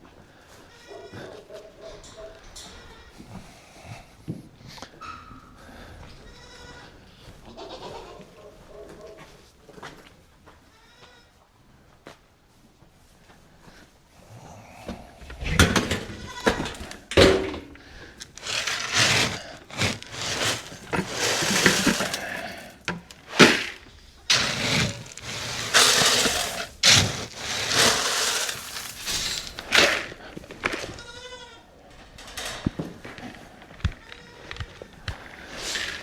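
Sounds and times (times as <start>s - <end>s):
goats and sheep bleating: 6.3s - 8.4s
rustling: 15.8s - 31.2s, 32.0s - 36.0s.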